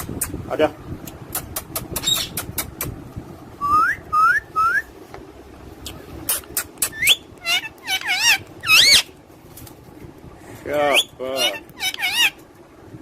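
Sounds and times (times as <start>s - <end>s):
parrot whistling: 3.6s - 4.9s, 6.8s - 9.1s, 10.9s - 12.4s.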